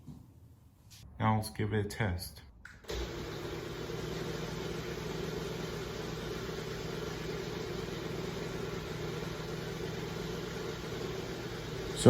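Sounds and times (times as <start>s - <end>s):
garage door opener motor running: 2.8s - 12.0s.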